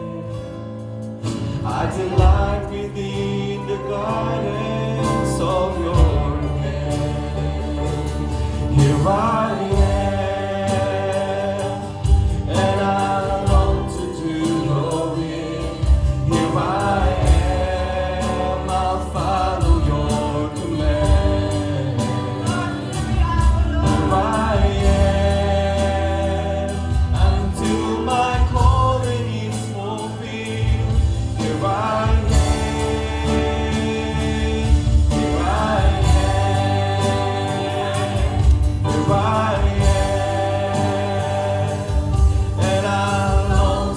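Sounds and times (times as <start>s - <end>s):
gospel band playing: 0.0s - 43.9s
voices singing: 0.0s - 43.9s.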